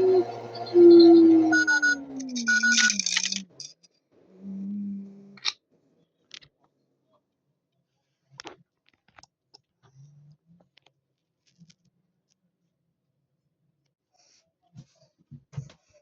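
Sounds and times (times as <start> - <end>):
faint low hum: 0.0 - 6.2
toy clicks and taps: 2.2 - 3.6.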